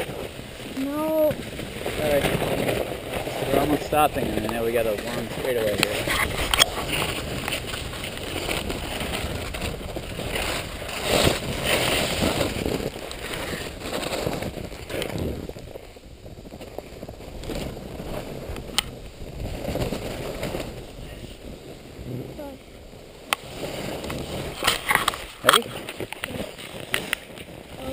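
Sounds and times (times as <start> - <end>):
snow hissing and crunching: 0.0 - 27.9.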